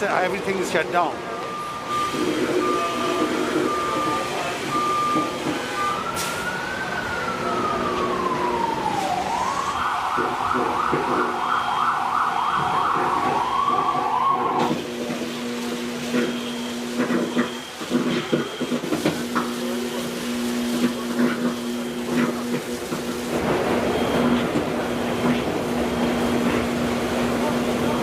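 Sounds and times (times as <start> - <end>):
emergency vehicle siren: 0.0 - 28.0
short repeated beeps: 1.4 - 6.0.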